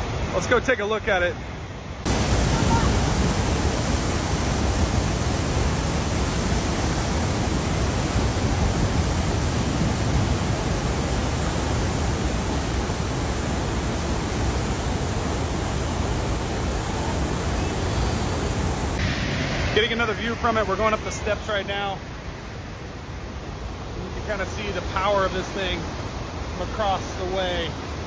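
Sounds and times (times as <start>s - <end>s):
waterfall rushing: 2.0s - 22.2s
heavy low rumble: 16.7s - 21.5s.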